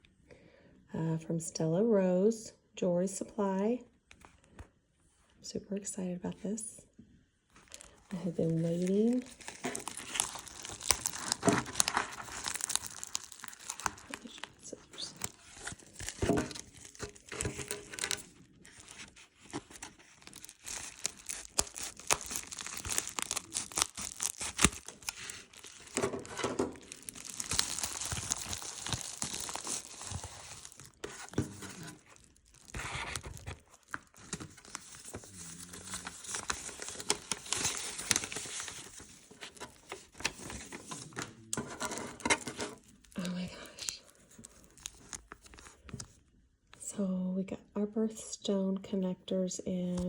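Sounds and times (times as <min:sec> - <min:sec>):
package tearing and crinkling: 0:07.6 - 0:46.2.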